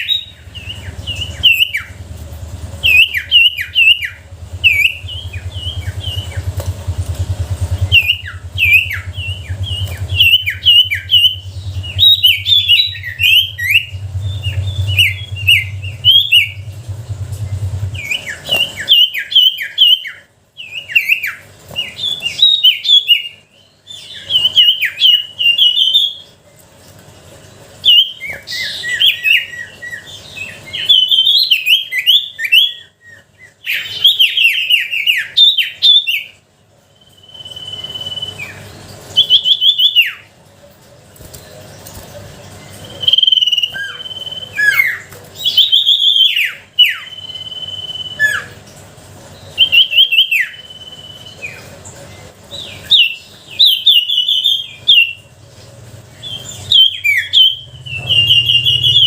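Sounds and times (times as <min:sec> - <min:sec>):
steady low hum: 0:00.0 - 0:59.0
songbird chirping: 0:02.7 - 0:26.4, 0:27.8 - 0:40.3, 0:56.2 - 0:59.0.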